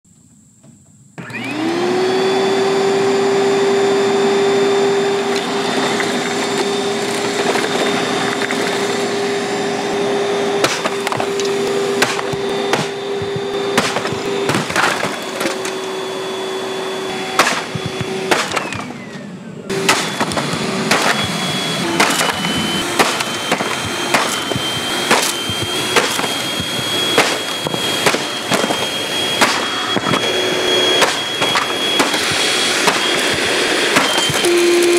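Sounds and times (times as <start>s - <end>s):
vacuum cleaner motor whine: 0.7s - 34.9s
sharp knocks and cracks: 10.6s - 15.8s, 17.4s - 18.9s, 19.8s - 21.4s, 22.0s - 30.2s, 31.0s - 34.5s.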